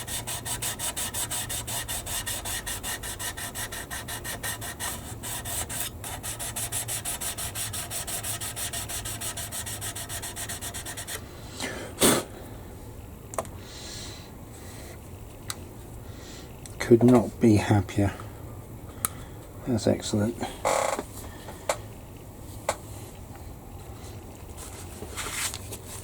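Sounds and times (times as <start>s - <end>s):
rubbing or scraping by hand: 0.0s - 11.2s.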